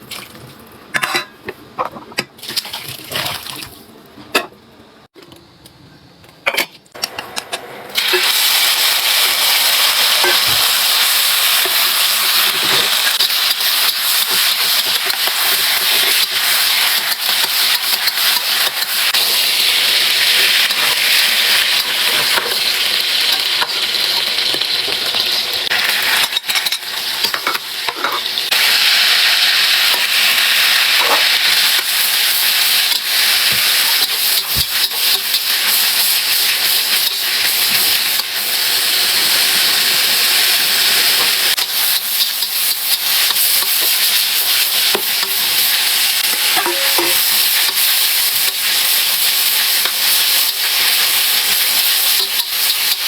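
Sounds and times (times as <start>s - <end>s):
food sizzling in a pan: 7.9s - 53.0s.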